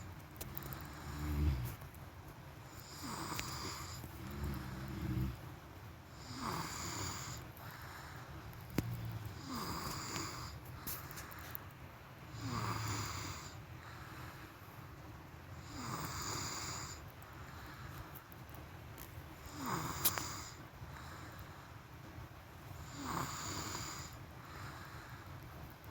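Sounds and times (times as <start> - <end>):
person snoring: 0.5 - 1.8, 2.8 - 5.4, 6.2 - 7.4, 8.9 - 10.6, 12.3 - 13.6, 19.5 - 20.6, 22.9 - 24.2.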